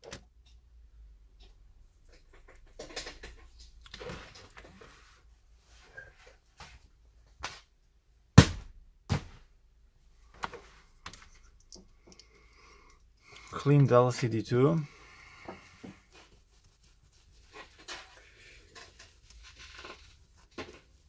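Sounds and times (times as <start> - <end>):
items knocking down on workbench: 8.4 - 9.5.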